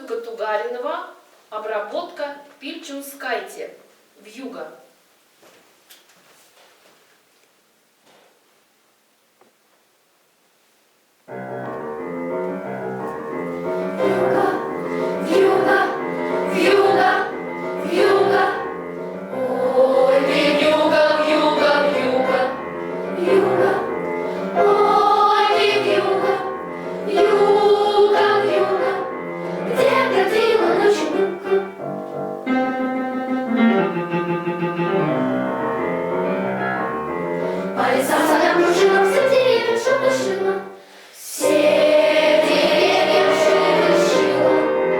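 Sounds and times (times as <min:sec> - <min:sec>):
piano accompaniment: 0:11.3 - 0:40.8, 0:41.4 - 0:44.9
children's choir singing: 0:13.6 - 0:31.9, 0:37.6 - 0:44.9.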